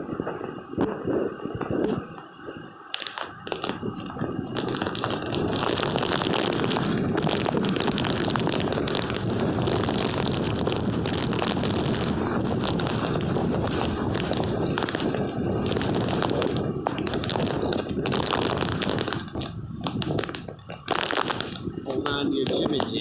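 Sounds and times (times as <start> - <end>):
wind buffeting microphone: 0.0 - 23.0.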